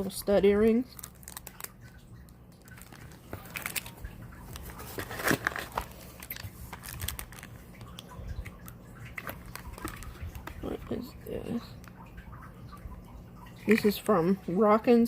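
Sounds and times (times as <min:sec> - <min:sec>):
packaging crinkling and rustling: 0:00.7 - 0:11.0.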